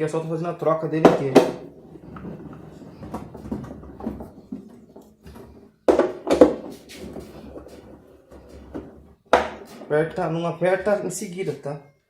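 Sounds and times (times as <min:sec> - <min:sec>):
loud knocks: 0:03.0 - 0:06.8.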